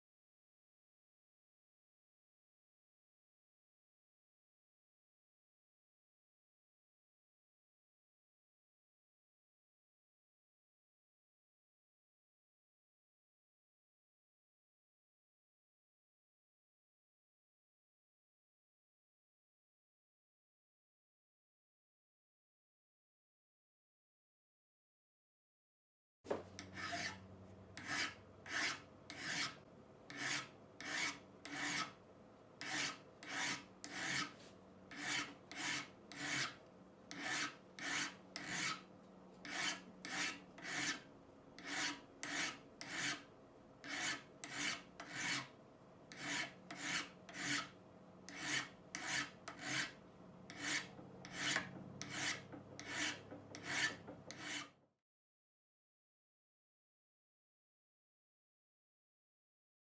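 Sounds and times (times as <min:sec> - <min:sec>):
abrasive scrubbing metal tool: 0:32.6 - 0:38.8, 0:48.3 - 0:54.6.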